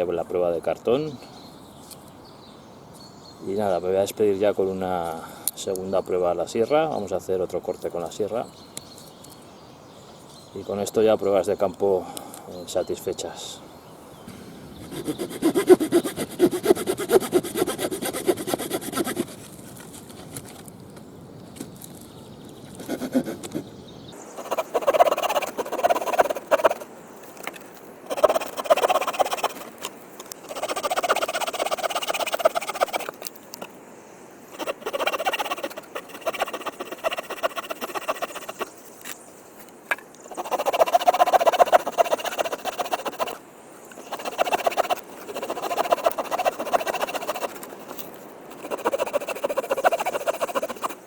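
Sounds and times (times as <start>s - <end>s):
saw rasping through wood: 14.9s - 19.4s, 24.4s - 26.8s, 28.1s - 29.8s, 30.4s - 33.1s, 34.5s - 38.6s, 40.3s - 43.4s, 44.0s - 47.9s, 48.5s - 51.0s.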